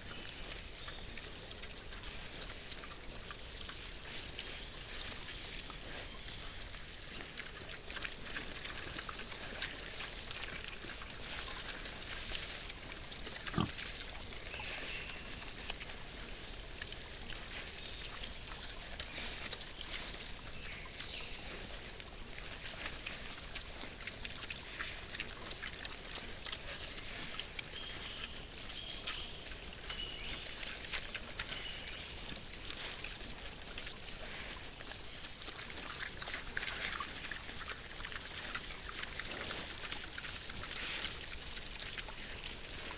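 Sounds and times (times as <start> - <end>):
crunching of chewing and rooting: 0.1 - 42.9
wild boars grunting: 3.8 - 16.6.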